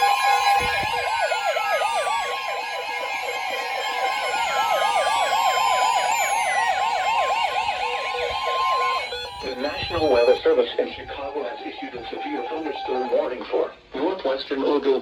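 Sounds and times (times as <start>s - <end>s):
fast yelping siren alarm: 0.0s - 13.4s
slow falling wail alarm: 0.0s - 13.4s
steady alert tone: 0.0s - 13.4s.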